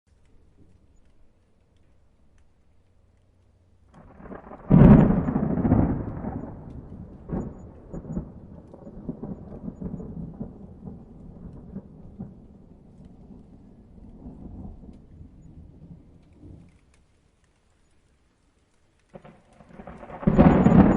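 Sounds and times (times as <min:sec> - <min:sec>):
thunder clap and rolling rumble: 0:03.9 - 0:17.0, 0:19.2 - 0:20.9.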